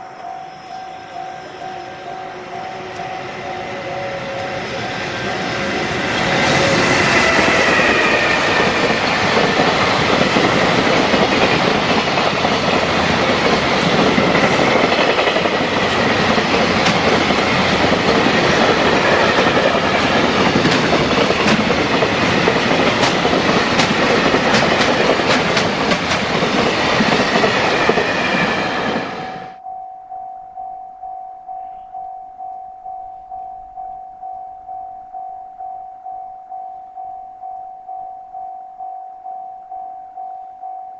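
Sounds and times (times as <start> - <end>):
freight train rushing past: 0.0 - 29.6
level crossing warning bell: 0.0 - 40.9
wheels clacking over rail joints: 6.1 - 29.2.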